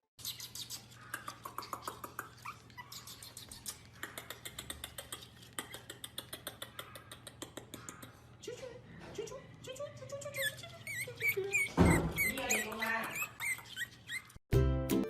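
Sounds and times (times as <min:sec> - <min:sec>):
dog whimpering: 0:02.3 - 0:04.0, 0:10.2 - 0:14.4.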